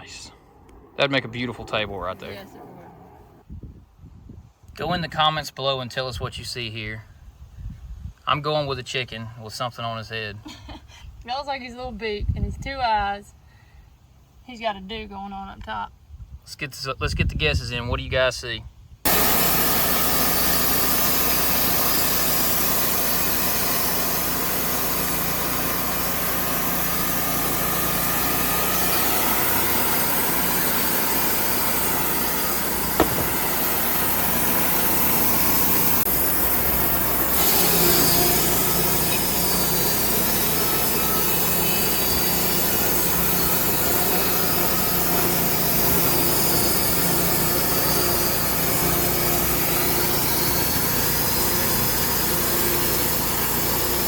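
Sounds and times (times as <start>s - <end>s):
band blade cutting log: 19.1s - 43.6s
sawmill engine under load: 19.1s - 54.0s.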